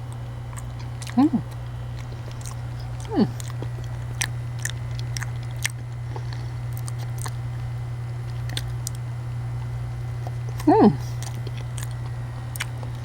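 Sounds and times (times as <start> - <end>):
person chewing with wet smacks: 0.0 - 13.0
steady low hum: 0.0 - 13.0.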